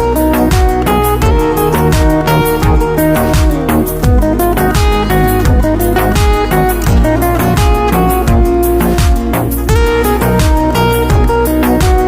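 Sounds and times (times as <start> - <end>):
electronic music with beat: 0.0 - 12.0.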